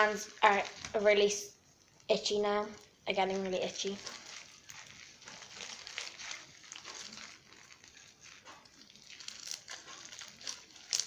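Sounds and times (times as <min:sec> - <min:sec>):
crackling and crinkling: 0:00.0 - 0:11.0
slime squished by hand: 0:03.3 - 0:11.0.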